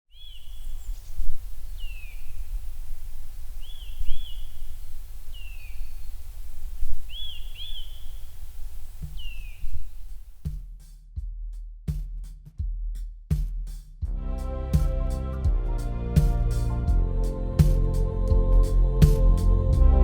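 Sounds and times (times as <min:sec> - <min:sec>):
bird whistling calls: 0:03.6 - 0:10.2
low rumble: 0:14.0 - 0:20.0
low thumps: 0:14.1 - 0:20.0.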